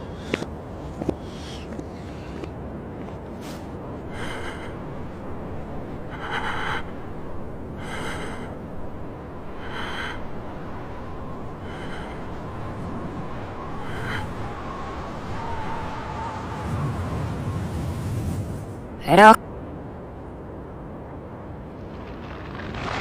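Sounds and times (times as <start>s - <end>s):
person breathing heavily: 0.0s - 2.6s, 3.3s - 15.9s
low steady rumble: 1.8s - 15.4s.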